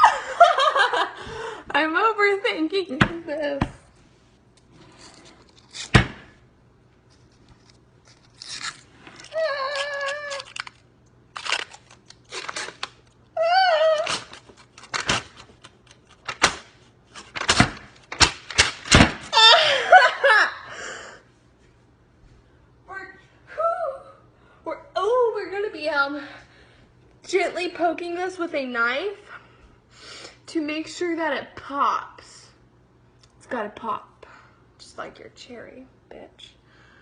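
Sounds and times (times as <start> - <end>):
girl squealing and whining: 9.2 - 10.6, 13.4 - 14.3, 19.3 - 20.5, 23.5 - 24.2.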